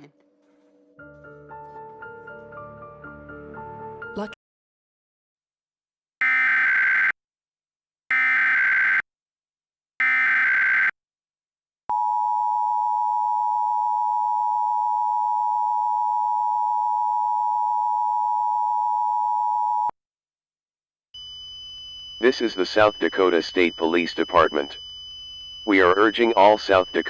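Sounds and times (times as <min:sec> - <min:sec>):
digital data tone bursts: 0:22.2 - 0:24.8.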